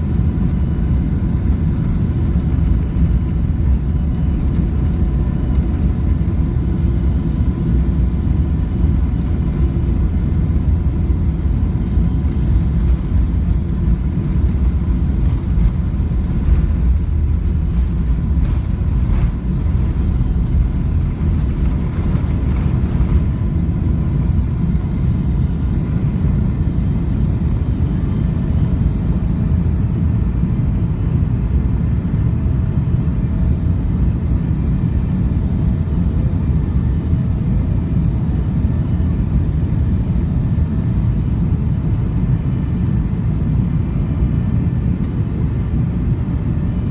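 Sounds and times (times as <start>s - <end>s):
faint thin engine whine: 0.0s - 46.9s
jet engine rumble: 0.0s - 46.9s.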